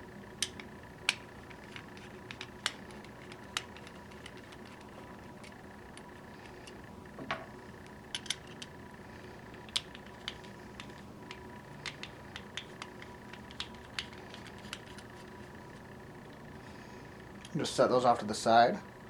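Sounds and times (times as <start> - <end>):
screwdriver clicking on metal screws: 0.4 - 6.1.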